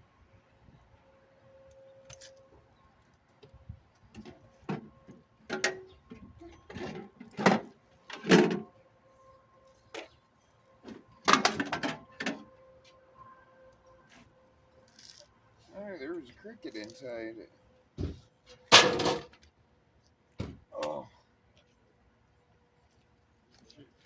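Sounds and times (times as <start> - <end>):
knocks and clanks of parts handled: 4.1 - 8.7, 10.9 - 12.4.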